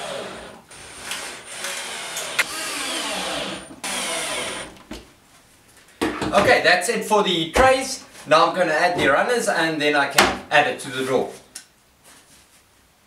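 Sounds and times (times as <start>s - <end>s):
electric drill driving screws: 0.0s - 4.8s.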